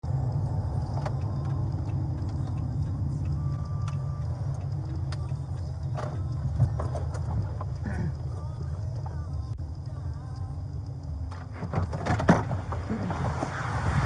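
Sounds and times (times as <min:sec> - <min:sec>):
low rumble of moving car: 0:00.0 - 0:14.0.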